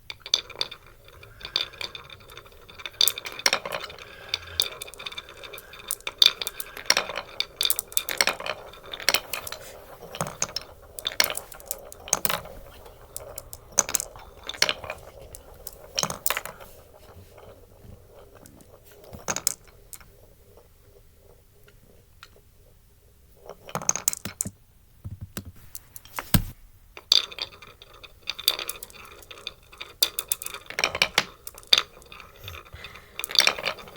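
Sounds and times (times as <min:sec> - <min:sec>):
marbles rolling on wooden track: 0:00.0 - 0:24.5, 0:26.9 - 0:33.9
marbles clacking on wood: 0:00.0 - 0:26.2, 0:27.0 - 0:33.9.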